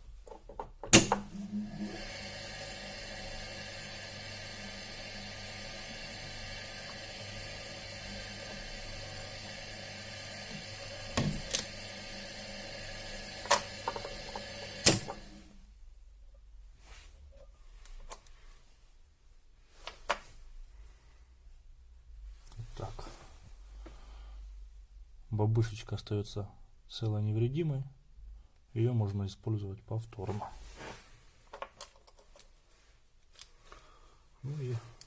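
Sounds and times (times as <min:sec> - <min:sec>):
drill press running: 0:01.0 - 0:15.5
drill press switch click: 0:14.8 - 0:15.3.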